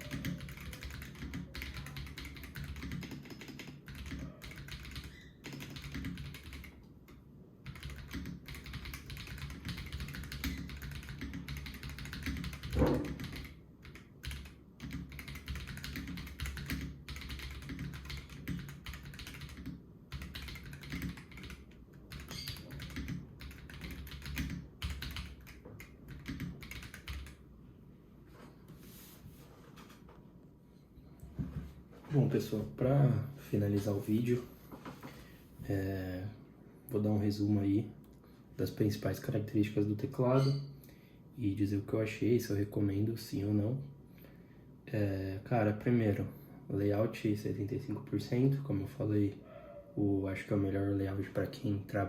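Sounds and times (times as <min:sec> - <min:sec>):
mechanical keyboard typing: 0:00.0 - 0:06.9, 0:07.6 - 0:27.4.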